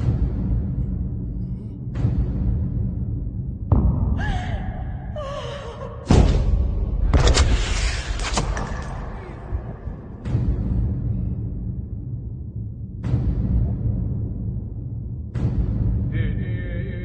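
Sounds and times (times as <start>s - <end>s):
dramatic soundtrack music: 0.0s - 17.0s
harsh noise with sharp cracks: 7.0s - 10.4s.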